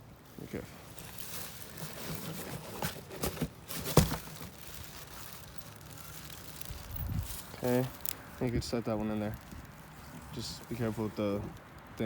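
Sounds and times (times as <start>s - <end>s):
packaging crinkling: 0.9s - 8.3s.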